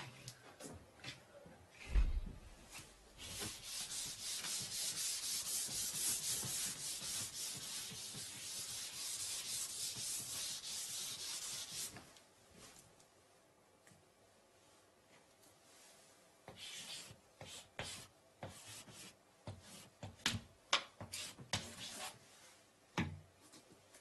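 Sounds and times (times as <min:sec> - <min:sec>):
dry rubbing strokes: 0:02.6 - 0:12.0.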